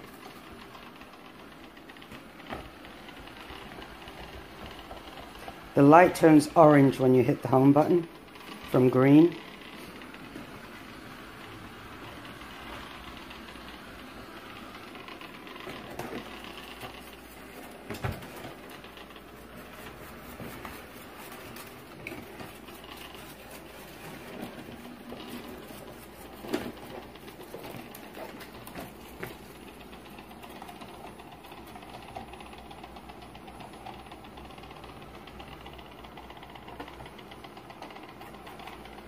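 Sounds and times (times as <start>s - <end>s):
robot vacuum whirring: 8.2s - 32.0s.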